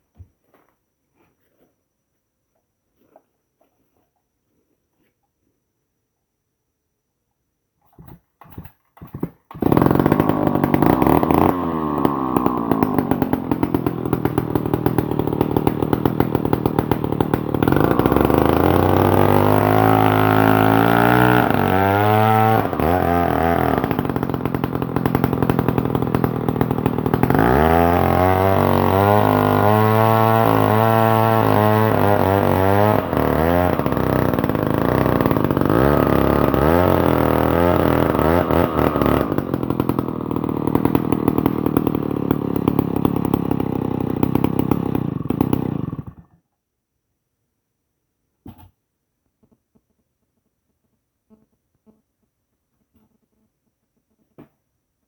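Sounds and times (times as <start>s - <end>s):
chainsaw revving: 7.9s - 46.4s.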